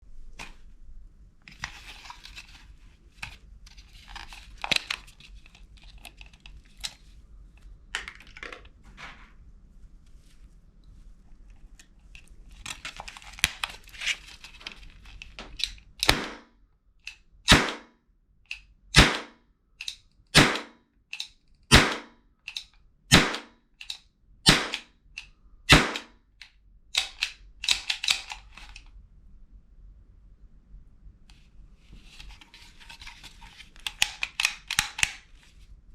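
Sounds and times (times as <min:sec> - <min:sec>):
toy gun handling clicks: 0:19.8 - 0:20.1, 0:21.1 - 0:21.4, 0:22.4 - 0:22.8, 0:23.8 - 0:24.0, 0:24.7 - 0:28.9, 0:33.8 - 0:35.3.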